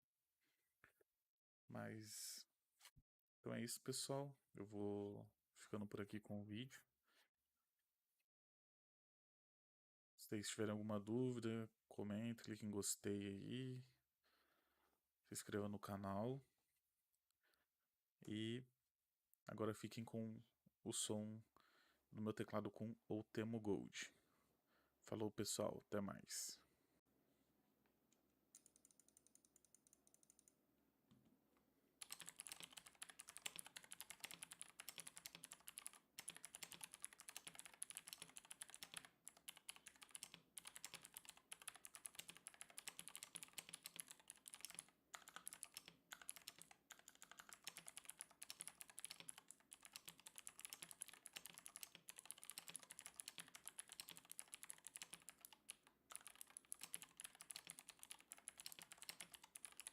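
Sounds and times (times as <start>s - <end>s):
mechanical keyboard typing: 32.0s - 59.9s.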